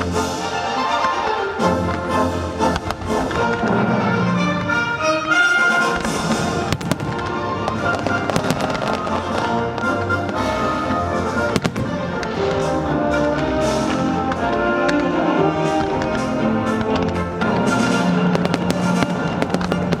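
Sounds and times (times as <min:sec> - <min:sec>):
fireworks bursting: 0:00.0 - 0:20.0
loud music: 0:00.0 - 0:20.0.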